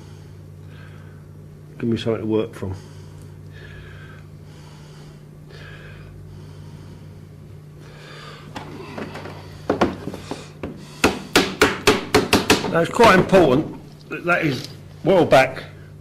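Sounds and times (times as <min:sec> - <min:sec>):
taps and knocks on metal sheet: 0:11.0 - 0:13.4.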